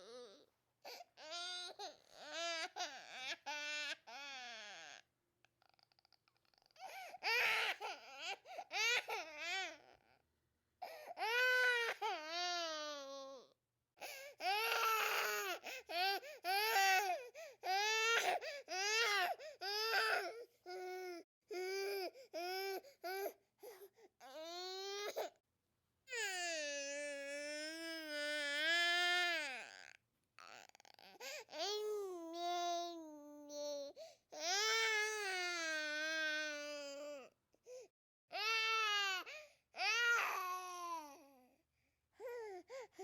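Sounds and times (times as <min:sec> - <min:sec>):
baby crying: 0:06.8 - 0:10.0, 0:14.4 - 0:23.4, 0:38.4 - 0:41.3.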